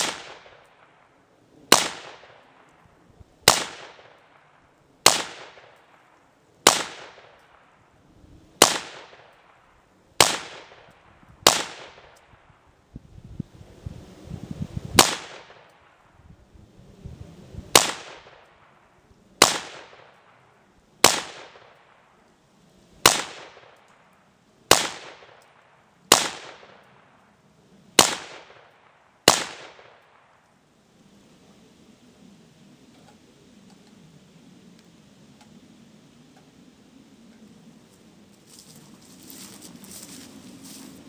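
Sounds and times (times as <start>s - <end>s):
rifle shots with ringing tail: 0.0s - 7.9s, 8.6s - 12.4s, 15.0s - 16.0s, 17.7s - 22.2s, 23.0s - 24.1s, 24.7s - 27.2s, 28.0s - 30.4s.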